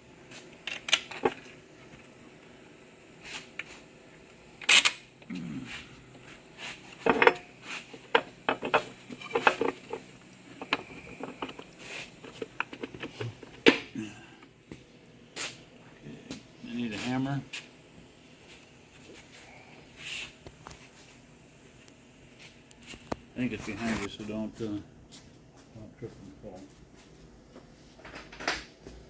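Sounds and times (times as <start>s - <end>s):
metal parts clinking and knocking: 7.0s - 10.0s, 10.6s - 13.8s.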